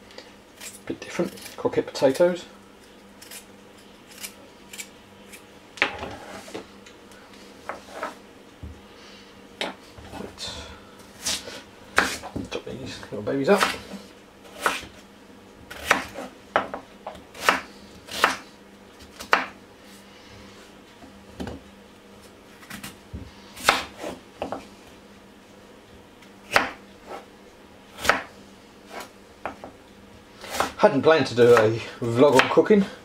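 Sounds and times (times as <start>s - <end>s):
knife chopping on a board: 12.0s - 12.5s, 13.6s - 13.9s, 14.5s - 15.0s, 15.7s - 18.4s, 19.1s - 19.6s, 23.6s - 24.6s, 26.5s - 27.2s, 28.0s - 28.3s, 30.5s - 30.8s.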